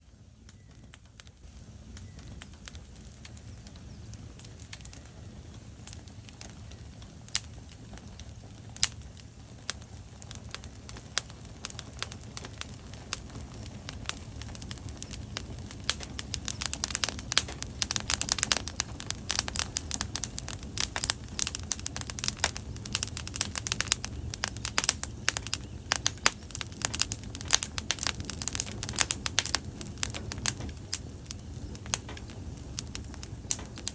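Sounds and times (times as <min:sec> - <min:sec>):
fire crackling in a fireplace: 0:00.0 - 0:33.9.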